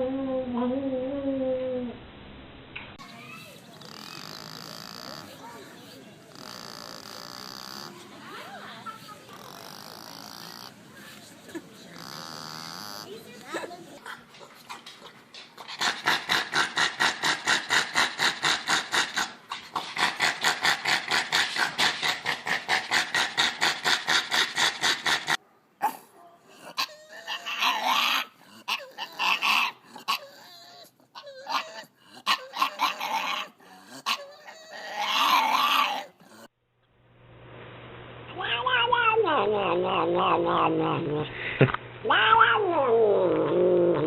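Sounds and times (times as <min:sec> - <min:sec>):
dog whining and grumbling: 0:00.0 - 0:02.0, 0:03.2 - 0:08.1, 0:09.3 - 0:13.4, 0:26.5 - 0:36.5, 0:38.4 - 0:41.3, 0:42.1 - 0:44.0.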